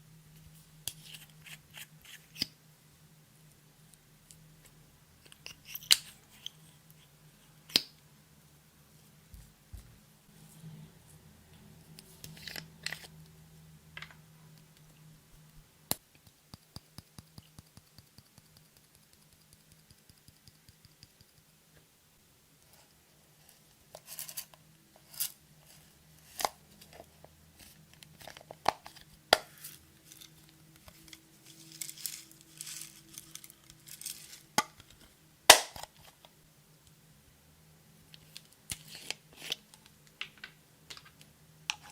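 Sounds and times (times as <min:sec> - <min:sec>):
packaging crinkling: 0:30.9 - 0:34.5.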